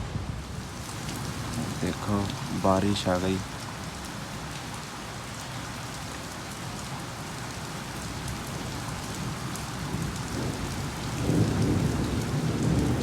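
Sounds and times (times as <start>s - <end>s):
rain falling: 0.0s - 13.0s
thunder rumbling: 9.9s - 13.0s.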